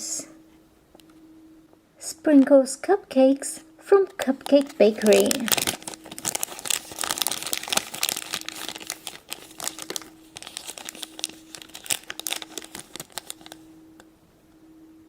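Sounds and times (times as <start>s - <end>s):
plastic packaging crinkling and tearing: 4.2s - 13.8s.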